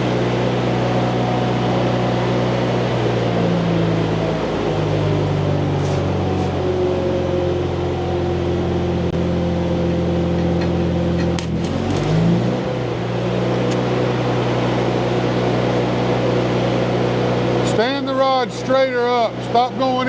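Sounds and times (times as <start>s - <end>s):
welder engine droning: 5.6s - 7.8s, 11.4s - 14.0s.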